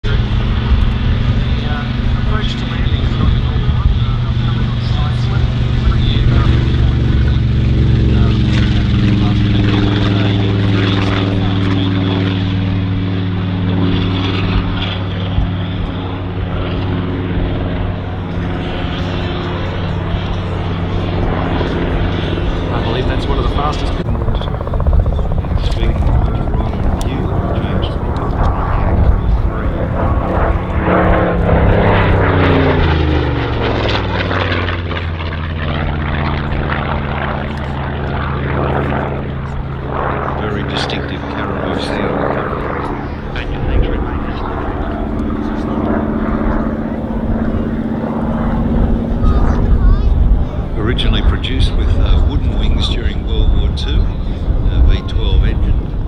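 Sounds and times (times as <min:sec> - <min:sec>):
propeller noise: 0:00.0 - 0:56.0
radial aircraft engine running: 0:00.0 - 0:56.0.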